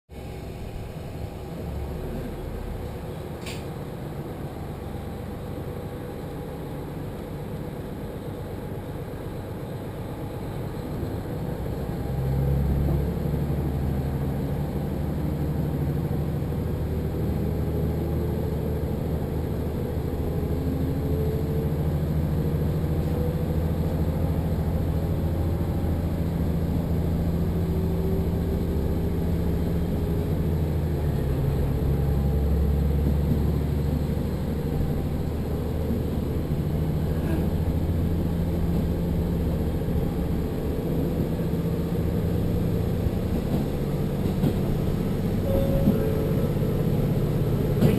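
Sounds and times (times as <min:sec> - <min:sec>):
railcar engine hum: 0:00.1 - 0:47.9
click: 0:03.4 - 0:03.7.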